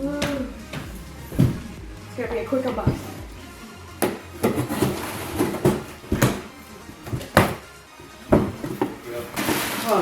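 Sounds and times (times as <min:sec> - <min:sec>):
cardboard box knocks and scraping: 0:02.7 - 0:03.2, 0:04.0 - 0:07.6, 0:08.3 - 0:09.7.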